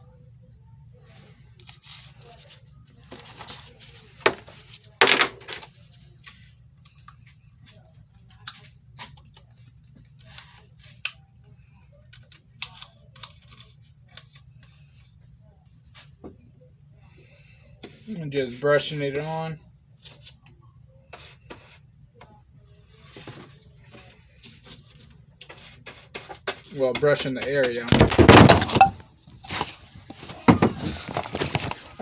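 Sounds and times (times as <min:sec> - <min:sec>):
rustling and scraping of materials: 0:00.9 - 0:11.0, 0:21.1 - 0:32.0.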